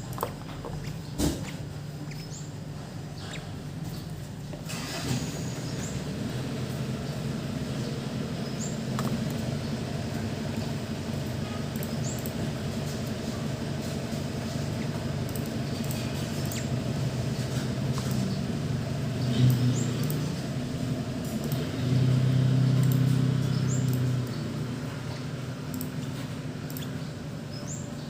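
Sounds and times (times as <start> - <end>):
steady low hum: 0.0 - 28.0
baby bird squeaking: 0.1 - 3.6.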